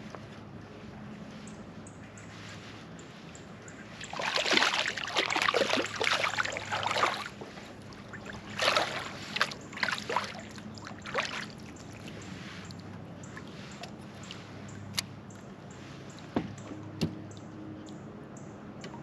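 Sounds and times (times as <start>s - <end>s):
water splashing against kayak: 3.8s - 14.6s.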